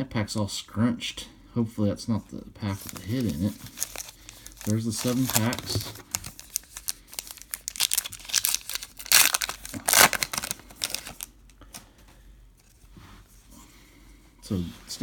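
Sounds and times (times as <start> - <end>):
plastic wrapper crinkling: 2.7 - 11.6
plastic wrapper tearing: 2.8 - 11.3.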